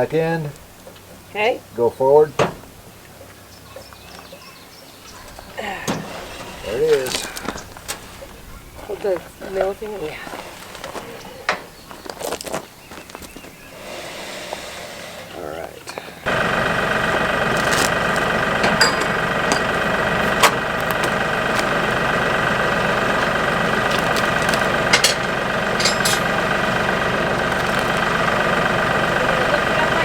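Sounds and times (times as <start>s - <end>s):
tractor engine running: 0.0s - 30.0s
sharp metallic clanks: 18.6s - 21.2s, 24.0s - 28.2s.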